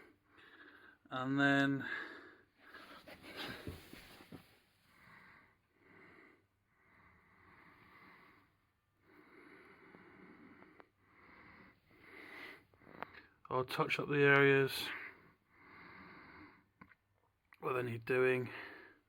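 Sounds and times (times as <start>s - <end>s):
faint breathing: 0.0s - 1.1s, 1.8s - 13.4s, 14.9s - 16.7s.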